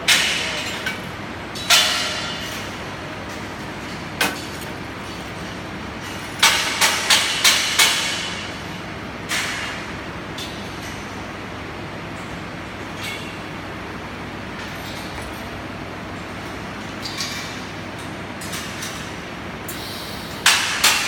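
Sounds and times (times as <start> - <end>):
steady background hum: 0.0 - 21.0.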